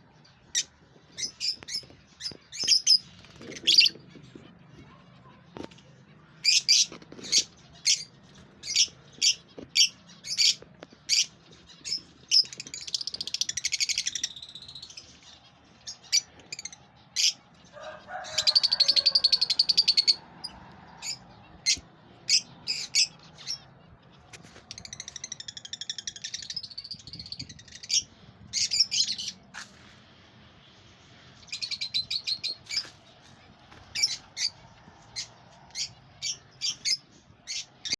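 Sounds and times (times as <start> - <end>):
lovebirds chirping: 0.0 - 37.9
rapid bird chattering: 0.5 - 4.2, 6.4 - 17.4.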